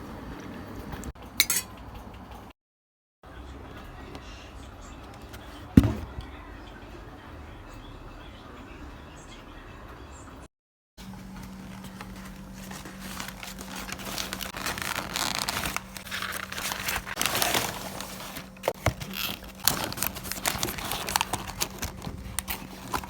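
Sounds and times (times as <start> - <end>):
packaging crinkling and tearing: 12.0 - 23.0.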